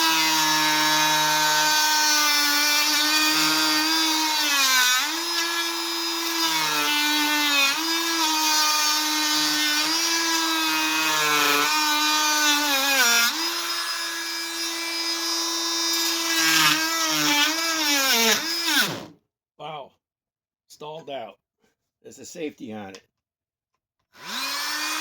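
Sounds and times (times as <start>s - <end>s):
oscillating multi-tool whining: 0.0s - 19.1s, 24.2s - 25.0s.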